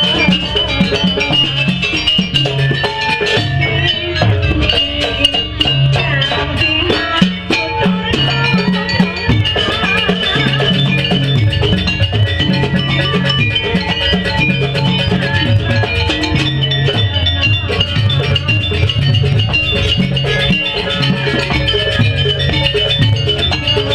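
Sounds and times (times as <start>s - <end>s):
drums: 0.0s - 23.9s
tuned metal percussion: 0.0s - 23.9s.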